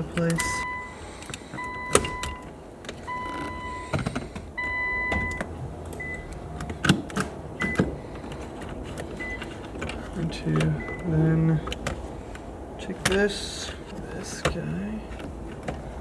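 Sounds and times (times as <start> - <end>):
car warning chime beeping: 0.0 - 6.4, 7.6 - 7.9, 9.2 - 9.5, 10.3 - 11.6.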